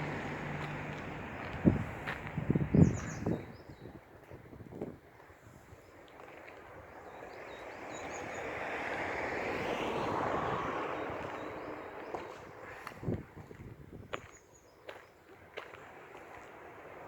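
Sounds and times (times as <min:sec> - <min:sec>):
road vehicle passing by: 0:00.0 - 0:03.4, 0:07.0 - 0:13.2.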